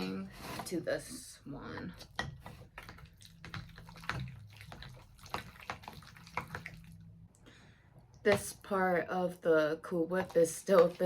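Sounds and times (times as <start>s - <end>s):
utensil stirring wet clicks: 2.0s - 7.2s, 10.1s - 11.0s.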